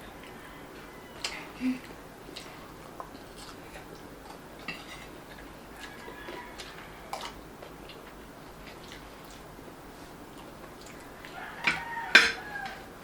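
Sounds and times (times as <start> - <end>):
chewing smacks: 0.2 - 11.4
utensils on a plate: 11.6 - 12.8.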